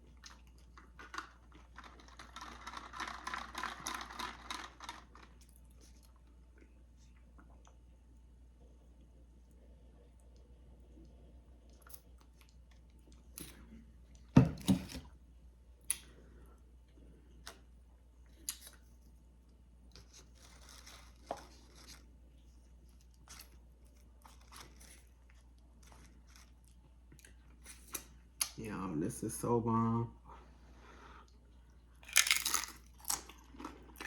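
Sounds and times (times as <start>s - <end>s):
chips crunching while eating: 0.2s - 5.6s, 32.0s - 34.0s.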